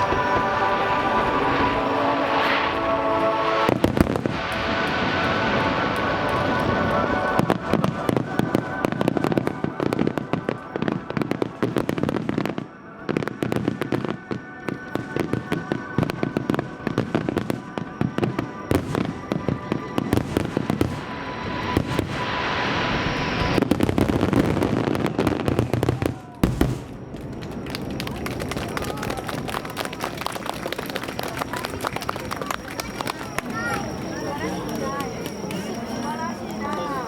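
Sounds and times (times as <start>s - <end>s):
fireworks rushing hiss: 0.0s - 12.7s, 14.9s - 37.0s
fireworks crackling and popping: 0.0s - 37.0s.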